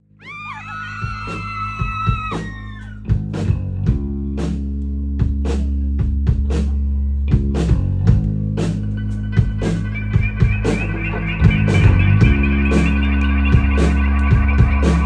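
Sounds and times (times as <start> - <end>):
drums hitting: 1.0 - 4.6, 5.2 - 6.7, 7.4 - 15.0
rock band playing live: 7.5 - 15.0.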